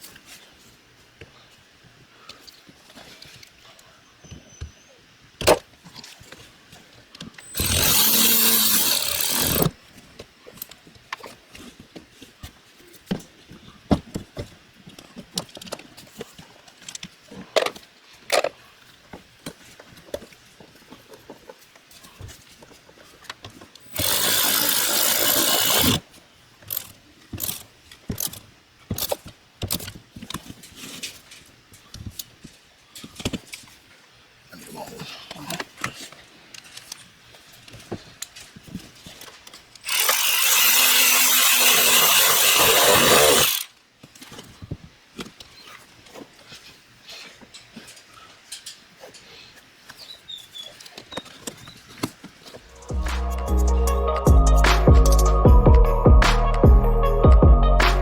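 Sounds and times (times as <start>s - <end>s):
tools clicking and knocking: 7.3s - 9.7s, 23.8s - 26.0s
power tool running: 7.4s - 9.8s, 23.9s - 26.0s, 39.8s - 43.7s.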